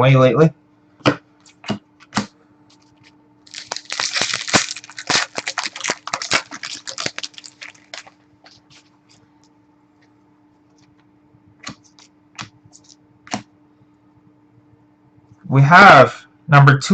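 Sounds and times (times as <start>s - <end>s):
wrapper crinkling and crumpling: 2.7s - 8.9s.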